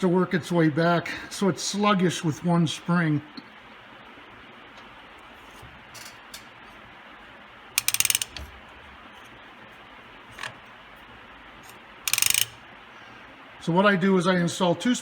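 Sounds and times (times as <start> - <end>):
brake pedal ratcheting clicks: 7.8 - 8.7, 11.6 - 12.6.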